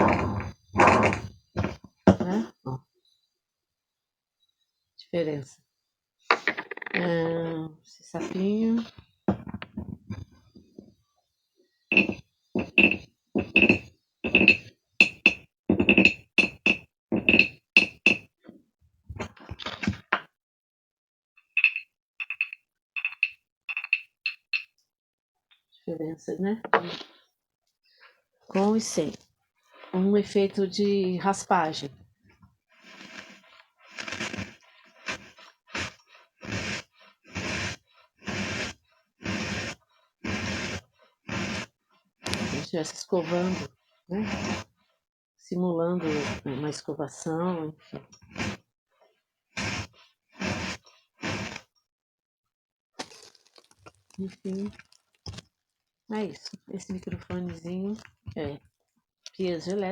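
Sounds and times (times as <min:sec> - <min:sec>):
soft rasp: 0:11.9 - 0:18.2, 0:32.7 - 0:44.8, 0:46.0 - 0:46.5, 0:47.9 - 0:48.6, 0:49.6 - 0:51.7
toy frog knocking croaks: 0:11.9 - 0:18.2, 0:21.4 - 0:24.7
scraping strokes: 0:32.8 - 0:41.7, 0:42.3 - 0:44.7, 0:48.3 - 0:48.6, 0:49.6 - 0:51.6.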